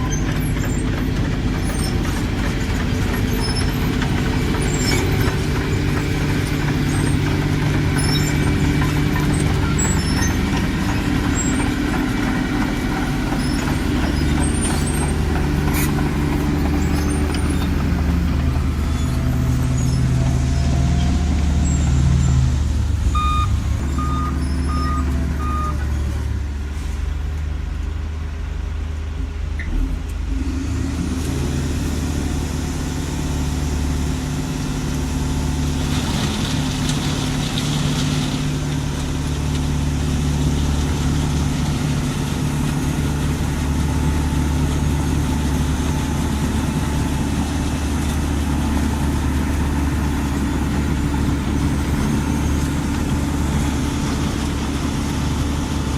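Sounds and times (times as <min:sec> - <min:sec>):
heavy diesel engine running: 0:00.0 - 0:55.9
short beeps: 0:23.2 - 0:25.8.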